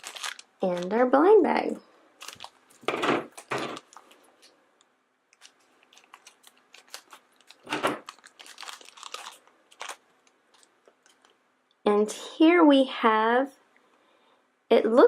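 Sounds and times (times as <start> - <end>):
plastic bag crinkling and tearing: 0.0 - 1.2, 2.2 - 4.5, 5.3 - 11.4.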